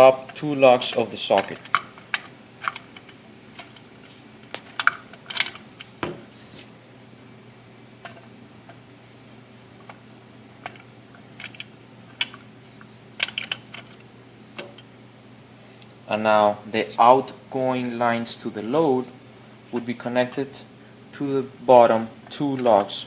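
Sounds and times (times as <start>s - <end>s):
low steady hum: 0.0s - 23.0s
dull knock: 6.0s - 6.2s.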